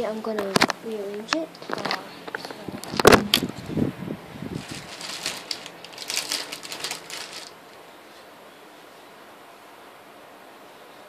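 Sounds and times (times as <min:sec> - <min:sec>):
bag rustling and crinkling: 0:04.4 - 0:07.8.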